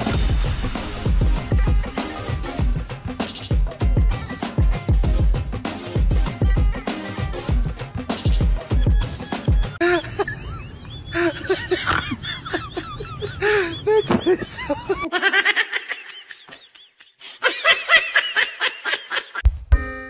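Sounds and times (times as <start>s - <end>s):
people laughing: 8.2s - 19.4s.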